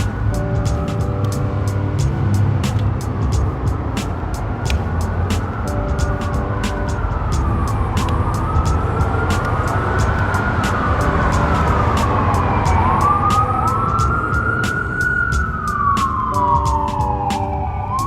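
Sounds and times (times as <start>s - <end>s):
emergency siren wailing: 0.0s - 18.0s
low street rumble: 0.0s - 18.0s.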